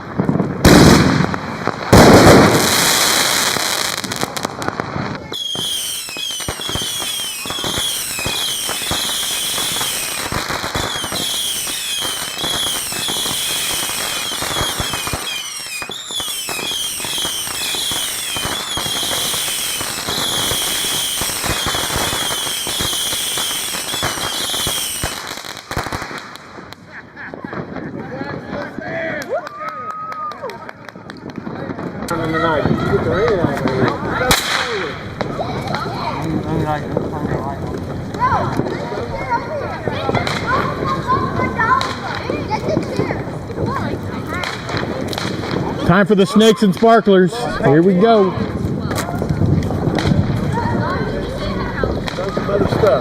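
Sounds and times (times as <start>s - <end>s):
firework bangs: 0.0s - 53.0s
fireworks crackling: 0.0s - 53.0s
falling firework whistles: 5.2s - 26.2s.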